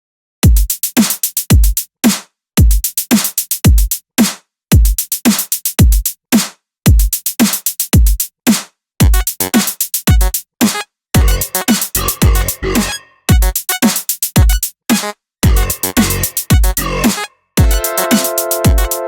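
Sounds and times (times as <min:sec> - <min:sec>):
drum machine kicks: 0:00.4 - 0:01.8, 0:02.6 - 0:02.9, 0:03.7 - 0:03.9, 0:04.7 - 0:05.0, 0:05.8 - 0:08.2, 0:09.0 - 0:19.0
sharp clicks and hi-hats: 0:00.5 - 0:19.0.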